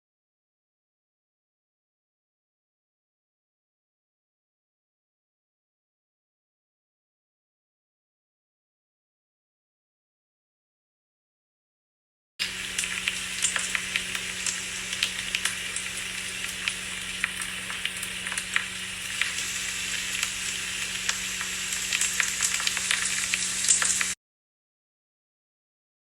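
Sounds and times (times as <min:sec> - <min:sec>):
faint steady hum: 0:12.4 - 0:24.2
frying pan sizzle: 0:12.4 - 0:24.2.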